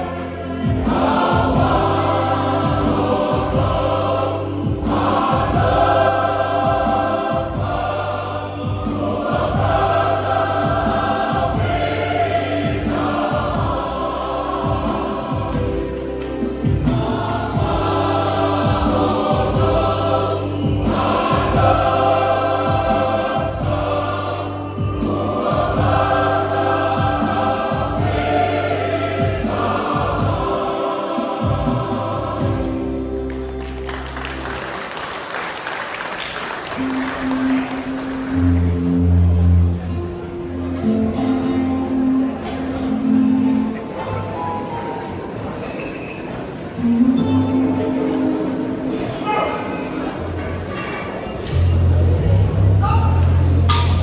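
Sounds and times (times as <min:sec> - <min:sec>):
bass and beat: 0:00.0 - 0:34.4
choir singing a hymn: 0:00.0 - 0:54.0.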